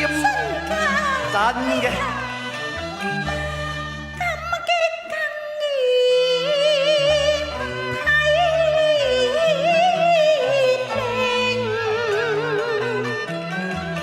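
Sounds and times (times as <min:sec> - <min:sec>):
opera singing with vibrato: 0:00.0 - 0:02.5, 0:04.4 - 0:13.0.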